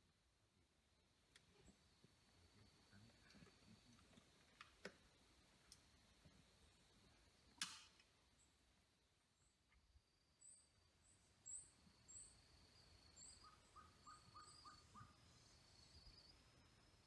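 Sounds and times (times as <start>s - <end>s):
bird chirps: 11.4s - 16.5s.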